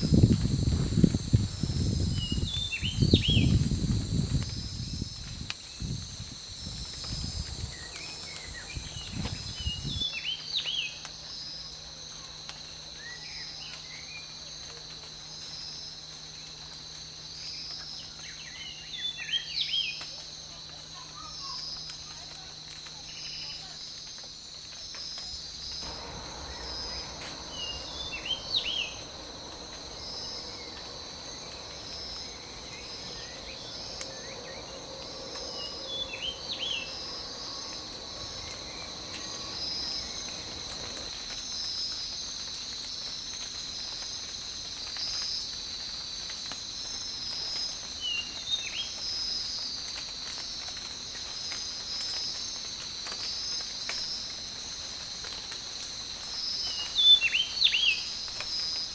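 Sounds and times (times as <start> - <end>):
insect chorus: 0.0 - 58.9
pulsing insect trill: 0.0 - 58.9
bird chirps: 25.6 - 41.0.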